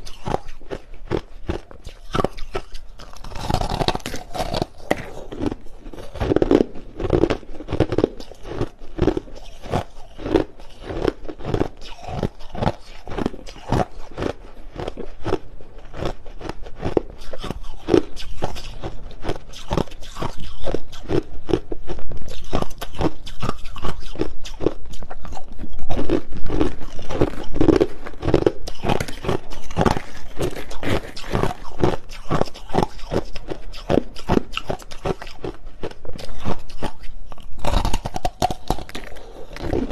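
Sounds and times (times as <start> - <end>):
person chewing crushed ice: 0.0 - 39.9.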